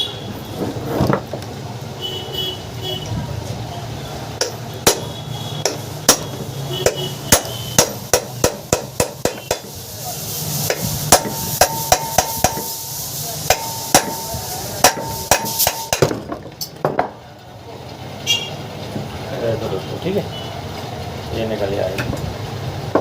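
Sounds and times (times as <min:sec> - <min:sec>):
hammer tapping on motor: 0:04.4 - 0:09.7, 0:13.5 - 0:14.2, 0:14.8 - 0:16.2
metallic ring: 0:11.2 - 0:16.1.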